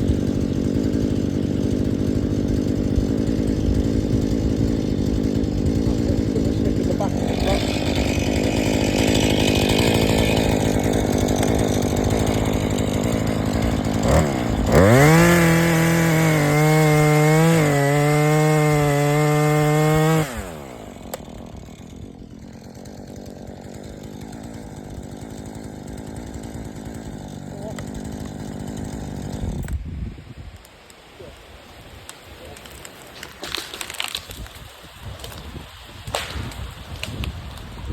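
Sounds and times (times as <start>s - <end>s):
chainsaw engine revving: 0.0s - 29.8s.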